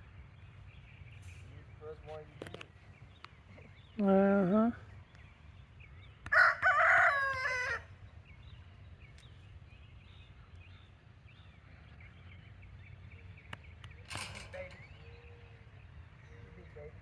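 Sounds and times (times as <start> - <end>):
small birds chirping: 0.0 - 17.0
rooster crowing: 6.3 - 7.9.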